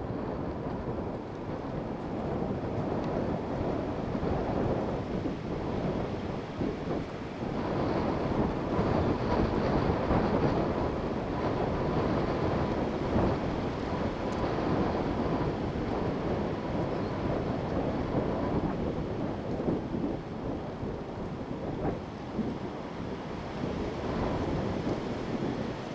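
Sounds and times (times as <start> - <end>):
wind buffeting microphone: 0.0 - 25.9
wind gusting through trees: 0.0 - 25.9.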